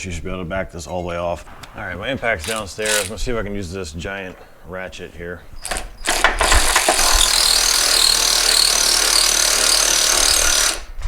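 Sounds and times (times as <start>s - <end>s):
power tool motor whining: 2.4s - 3.4s, 5.6s - 11.0s.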